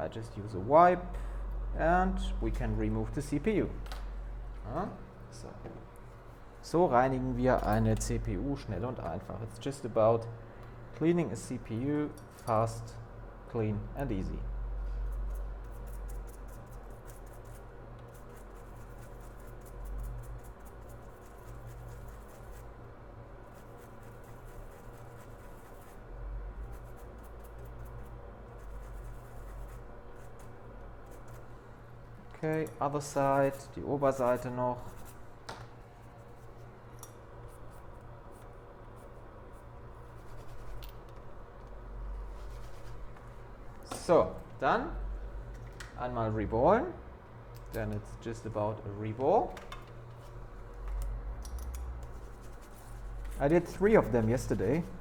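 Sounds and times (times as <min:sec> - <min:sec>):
steady low hum: 0:00.0 - 0:55.0
faint scratching and rubbing: 0:38.9 - 0:40.8, 0:42.2 - 0:43.2, 0:52.0 - 0:55.0.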